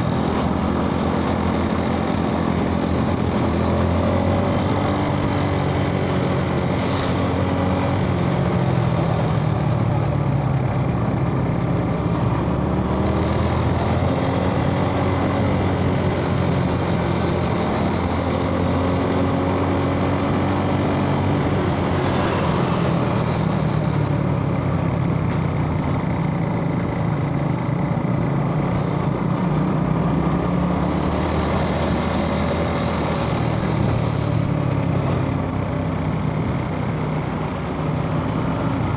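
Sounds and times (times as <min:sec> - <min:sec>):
motorcycle engine running: 0:00.0 - 0:38.9
road noise: 0:00.0 - 0:38.9.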